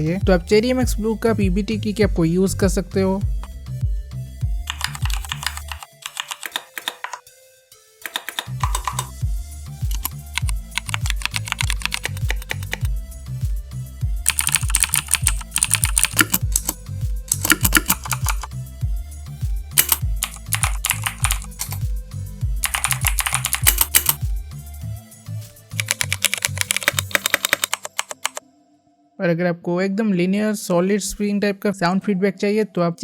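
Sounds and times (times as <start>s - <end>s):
simulated keyboard switch clicks: 4.7s - 7.2s, 8.1s - 9.1s, 14.3s - 18.5s, 19.8s - 21.8s, 22.7s - 24.2s, 25.8s - 28.4s
background music with bass beat: 8.5s - 25.9s.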